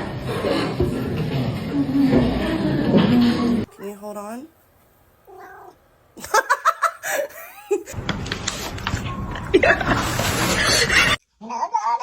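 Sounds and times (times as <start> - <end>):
person laughing: 6.2 - 8.0.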